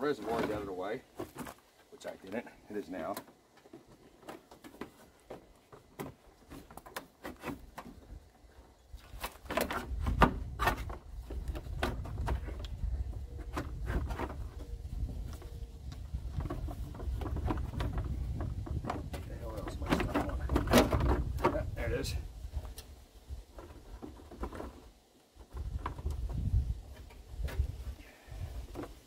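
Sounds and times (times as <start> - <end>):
plastic fan clicking and knocking: 9.5 - 12.8, 15.9 - 21.8.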